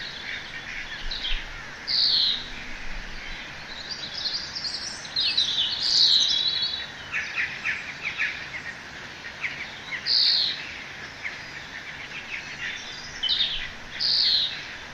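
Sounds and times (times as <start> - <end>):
birds chirping and singing: 0.0 - 14.9
faint steady hiss: 0.0 - 14.9.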